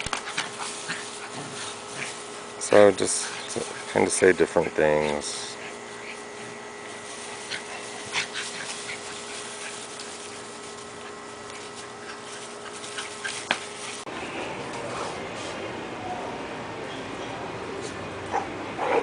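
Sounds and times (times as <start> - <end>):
steady background hum: 0.0 - 19.0.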